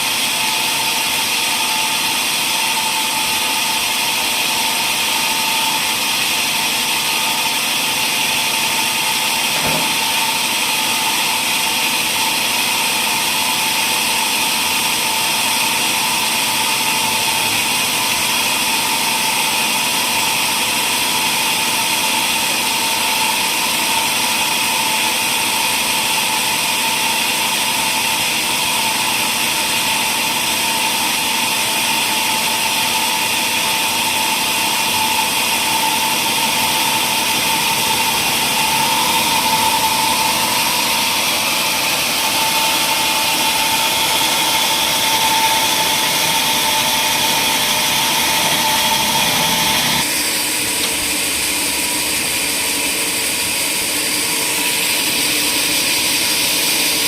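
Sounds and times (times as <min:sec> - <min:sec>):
woodworking machine whining: 0:00.0 - 0:57.0
brief knock: 0:09.6 - 0:10.1.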